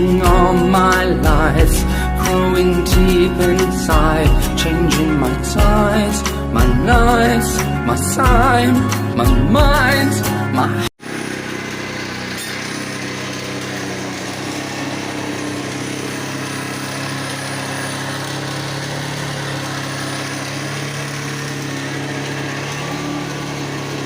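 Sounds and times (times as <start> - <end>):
motorcycle engine idling: 11.0 - 24.0.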